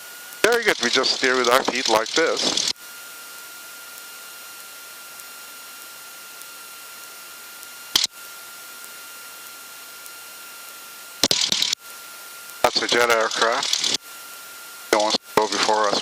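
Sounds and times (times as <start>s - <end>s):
static bursts: 0.0s - 2.8s, 7.8s - 8.1s, 11.1s - 11.8s, 12.5s - 14.1s, 14.9s - 16.0s
intercom audio hiss: 0.4s - 2.7s, 12.6s - 14.0s, 14.9s - 16.0s.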